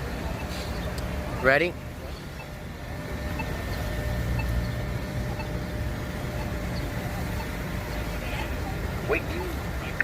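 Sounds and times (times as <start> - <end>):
road traffic rumble: 0.0 - 10.0
crosswalk button ticks: 3.3 - 4.8.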